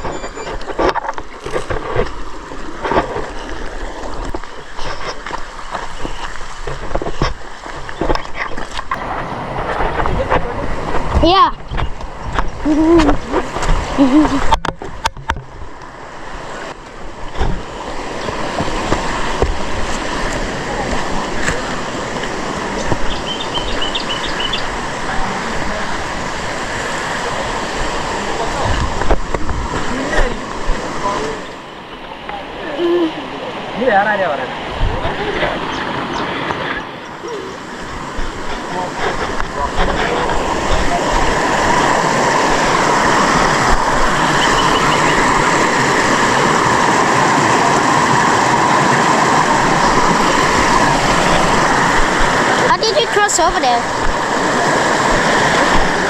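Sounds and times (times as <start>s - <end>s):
flowing water rushing: 0.0s - 56.0s
bird chirping: 23.0s - 24.7s, 44.4s - 45.2s.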